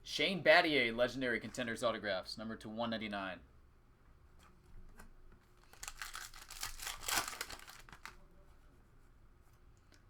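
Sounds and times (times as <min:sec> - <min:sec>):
wrapper crinkling and rustling: 0:05.6 - 0:08.2.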